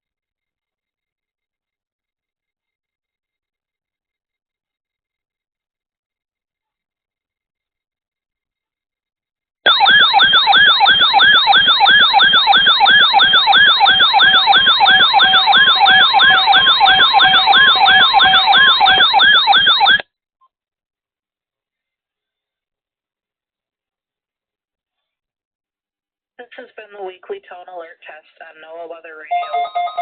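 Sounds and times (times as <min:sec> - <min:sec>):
electronic emergency siren wailing: 0:09.7 - 0:20.0.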